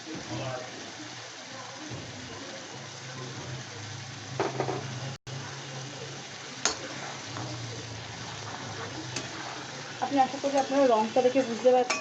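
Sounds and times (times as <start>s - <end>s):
paste sizzling in a pan: 0.0s - 12.0s
spatula stirring: 6.1s - 12.0s.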